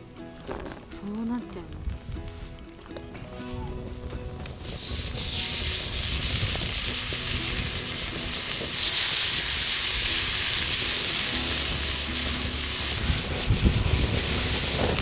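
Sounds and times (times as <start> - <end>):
food sizzling in a pan: 4.5 - 15.0.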